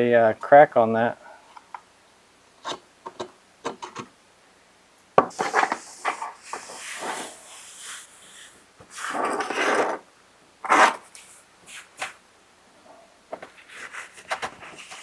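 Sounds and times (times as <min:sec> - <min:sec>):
rubbing and scraping: 0:05.3 - 0:10.0, 0:10.6 - 0:12.2, 0:13.4 - 0:15.0.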